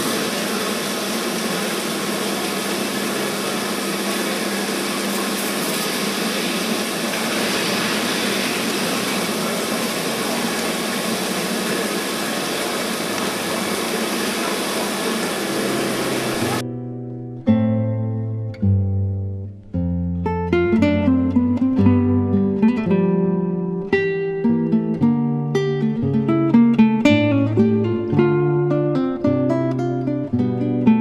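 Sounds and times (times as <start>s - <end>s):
milking machinery running: 0.0s - 16.6s.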